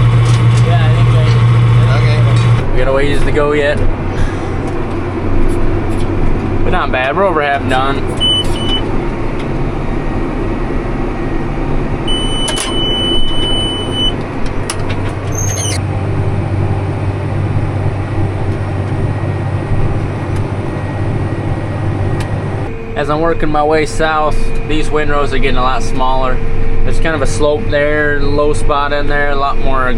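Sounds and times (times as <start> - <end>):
tractor engine running: 0.0 - 29.9
steady electronic beep: 8.2 - 8.9, 12.1 - 14.2.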